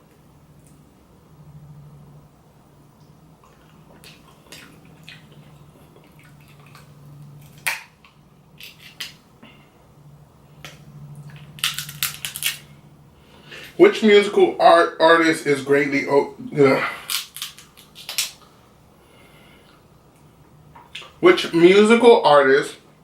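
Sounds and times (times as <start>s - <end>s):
faint low hum: 0.0s - 23.0s
crunchy chewing crackles: 3.4s - 9.2s, 11.2s - 12.7s, 16.8s - 18.5s
sharp crack: 10.7s - 12.7s.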